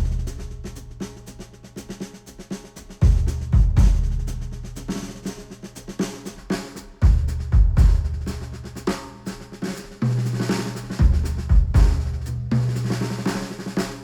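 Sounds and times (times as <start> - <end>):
drum-heavy music: 0.0 - 14.0
kick drum hits: 3.0 - 4.2, 7.0 - 8.2, 11.0 - 12.1.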